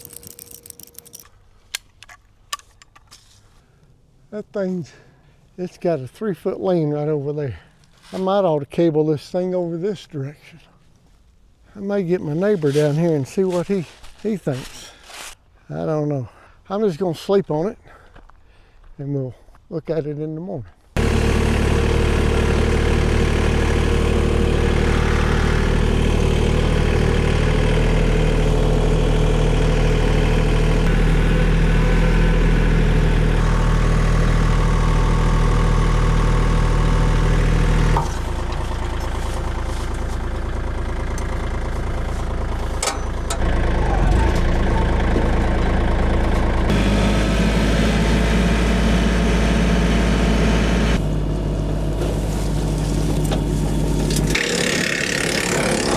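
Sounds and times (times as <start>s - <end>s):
sharp clicks: 0.0s - 3.1s
engine running steadily: 21.0s - 55.9s.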